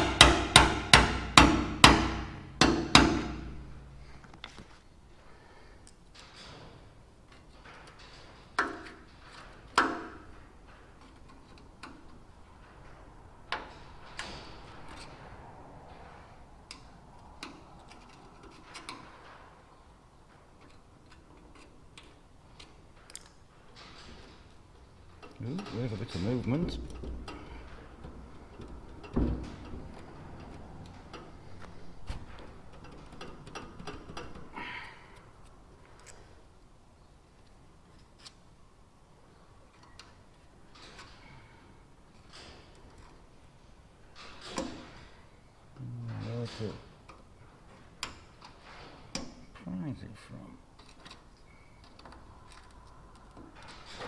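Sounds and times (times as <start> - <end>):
louder metal knocks: 0.0 - 3.8
metal tapping: 0.0 - 3.8.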